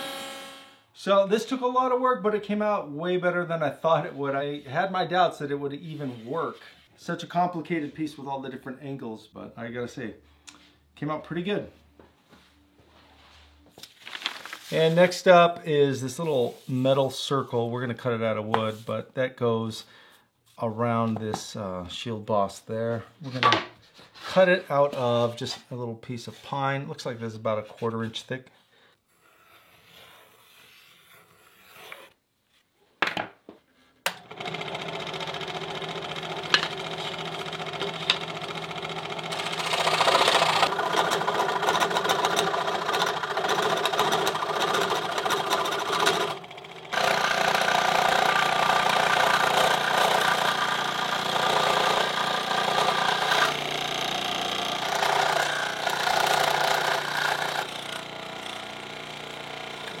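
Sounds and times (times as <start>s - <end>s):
power saw cutting wood: 0.0s - 0.8s, 34.1s - 60.0s.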